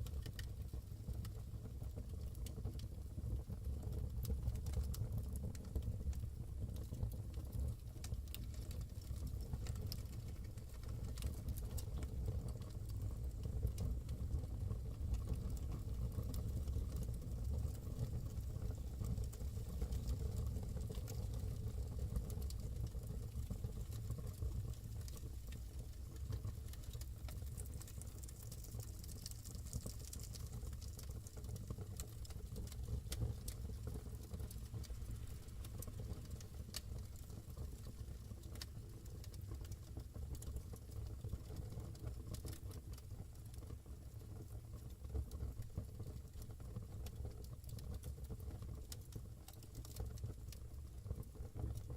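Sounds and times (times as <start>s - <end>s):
low fire rumble: 0.0s - 51.9s
fire crackling: 7.8s - 43.8s.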